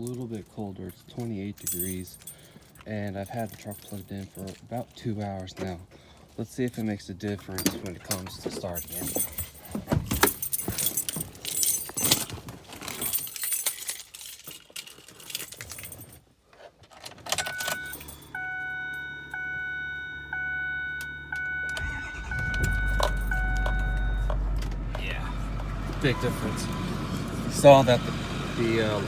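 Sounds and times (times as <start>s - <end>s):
keys jangling: 0.9s - 5.9s, 6.7s - 16.3s, 16.9s - 18.4s, 21.4s - 25.8s
dashboard warning chime: 17.4s - 29.0s
diesel engine cranking and idling: 17.5s - 29.0s.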